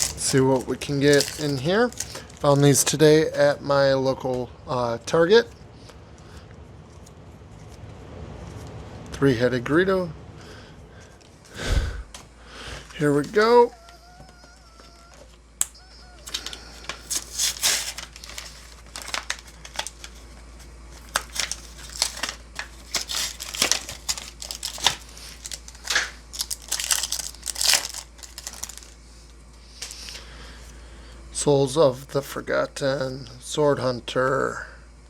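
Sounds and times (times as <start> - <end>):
foil wrapper crinkling and tearing: 0.0 - 3.5, 15.7 - 30.3.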